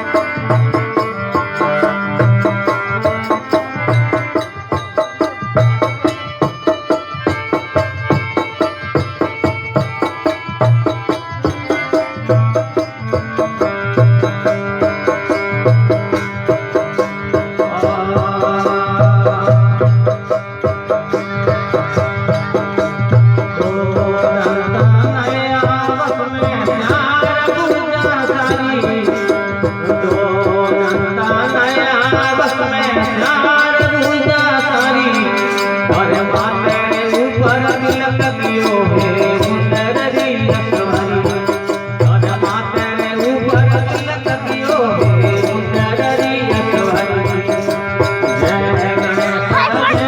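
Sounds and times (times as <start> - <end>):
devotional song melody: 0.0 - 50.0
hand drum beat: 0.0 - 50.0
jingling percussion: 0.0 - 50.0.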